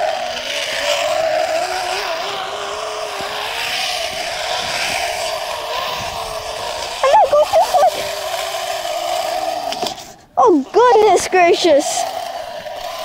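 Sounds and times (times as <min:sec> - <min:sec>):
zip-line pulleys whining: 0:00.0 - 0:13.0.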